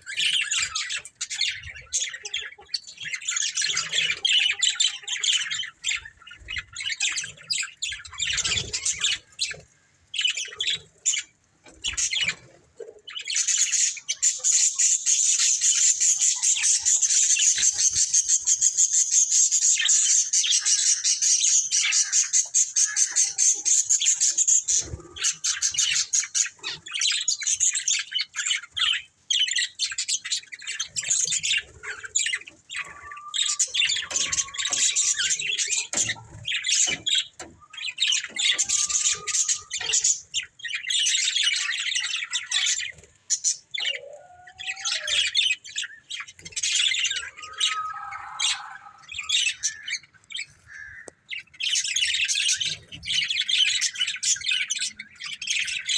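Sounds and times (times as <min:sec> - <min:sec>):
budgerigars chattering: 0:13.0 - 0:55.9.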